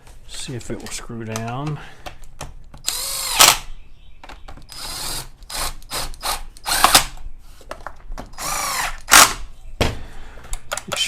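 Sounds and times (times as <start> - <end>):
cordless drill whining: 2.8 - 3.7, 4.7 - 7.2, 8.4 - 9.4.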